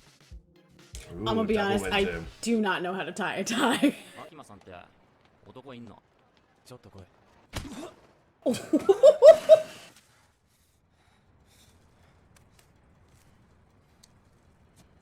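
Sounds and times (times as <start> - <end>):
person laughing: 3.4 - 4.3, 8.5 - 9.9.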